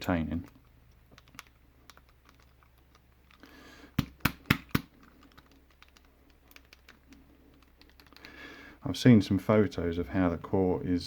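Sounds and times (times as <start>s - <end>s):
sharp taps: 3.9s - 4.9s.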